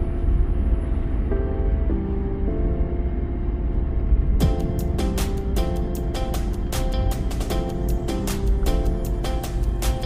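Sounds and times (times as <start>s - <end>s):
music with steady beat and bass: 4.3s - 10.0s.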